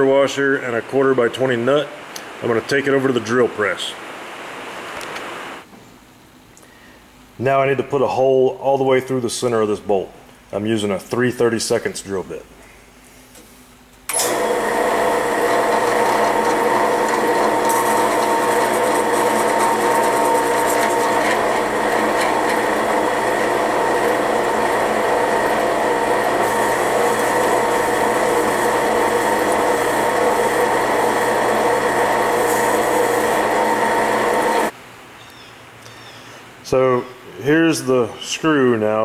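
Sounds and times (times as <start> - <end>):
drill press drilling into screw: 14.1 - 34.7.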